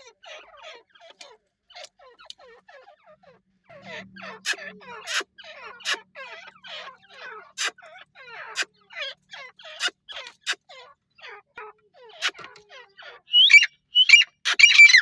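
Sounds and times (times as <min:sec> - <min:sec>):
francolins calling: 0:03.7 - 0:11.4, 0:12.2 - 0:15.0.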